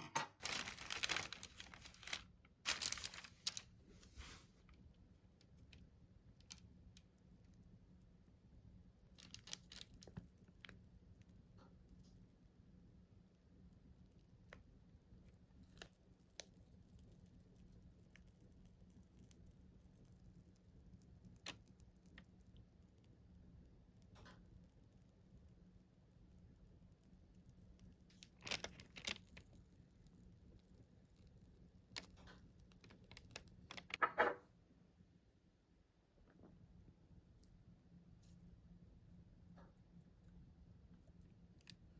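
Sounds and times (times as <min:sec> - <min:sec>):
kitchen items clicking and rustling: 0:00.0 - 0:03.6.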